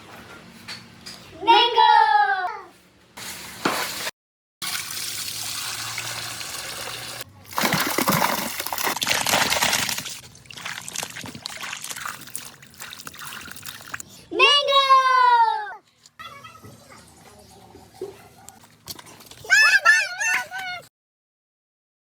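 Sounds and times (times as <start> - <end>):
water pouring from a tap: 4.6 - 14.0.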